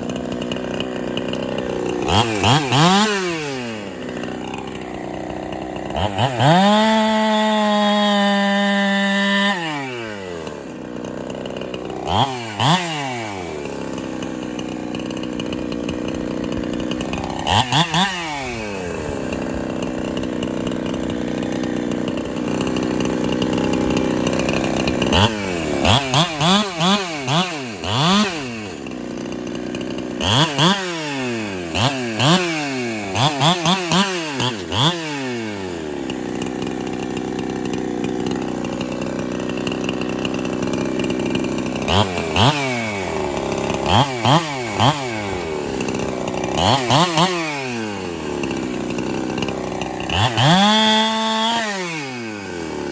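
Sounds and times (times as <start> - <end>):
chainsaw revving: 0.0 - 52.9.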